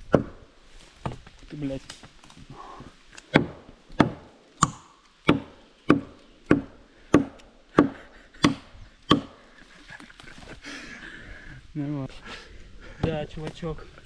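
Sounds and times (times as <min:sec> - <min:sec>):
axe chopping wood: 0:00.0 - 0:00.4, 0:03.2 - 0:09.4.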